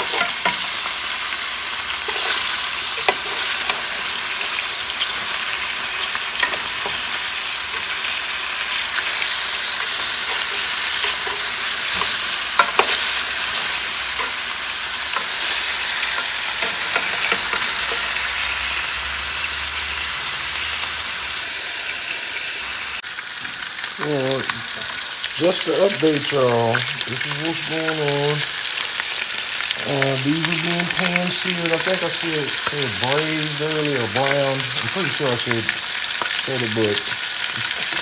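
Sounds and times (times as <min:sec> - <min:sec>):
meat sizzling in a pan: 0:00.0 - 0:38.0.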